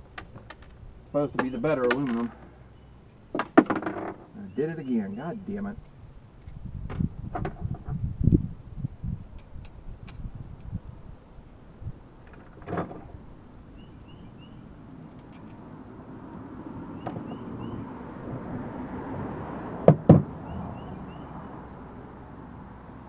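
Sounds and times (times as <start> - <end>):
hard knocks: 19.9 - 20.3.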